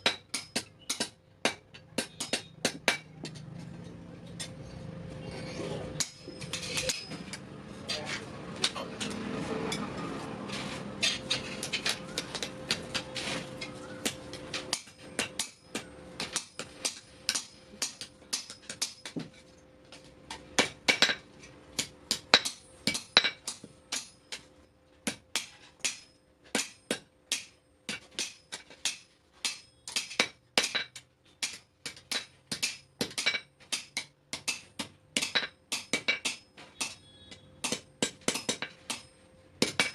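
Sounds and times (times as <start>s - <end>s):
hammer striking metal on anvil: 0.0s - 3.5s, 6.0s - 7.4s, 14.0s - 19.3s, 21.8s - 24.4s, 25.1s - 39.9s.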